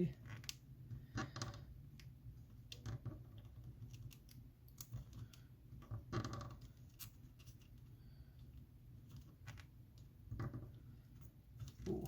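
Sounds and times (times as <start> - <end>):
adhesive strip crackling and clicking: 1.9 - 5.5.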